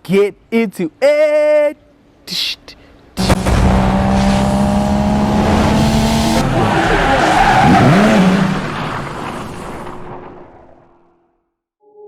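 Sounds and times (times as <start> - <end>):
car engine revving: 3.2 - 10.8
tyres squealing: 6.4 - 8.7.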